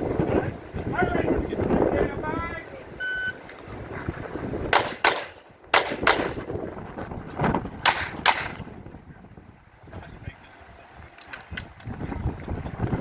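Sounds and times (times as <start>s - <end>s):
pistol shots in pairs: 4.7s - 6.4s, 7.8s - 8.7s.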